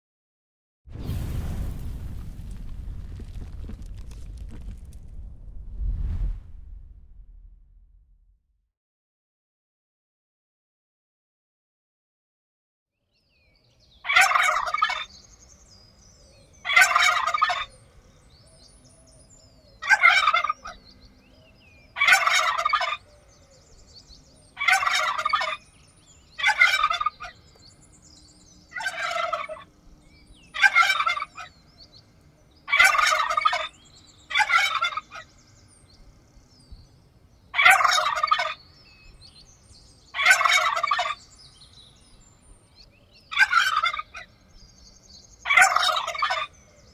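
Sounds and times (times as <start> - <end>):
turkey gobbling: 14.1 - 15.1, 16.7 - 17.7, 19.8 - 20.8, 21.9 - 23.1, 24.6 - 25.7, 26.4 - 27.4, 28.7 - 29.7, 30.5 - 31.6, 32.7 - 35.3, 37.6 - 38.6, 40.1 - 41.2, 43.3 - 44.3, 45.5 - 46.5.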